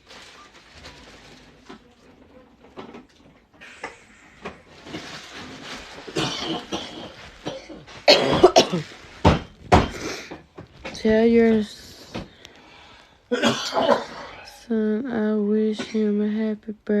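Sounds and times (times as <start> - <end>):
person coughing: 6.1 - 8.9, 13.3 - 14.6.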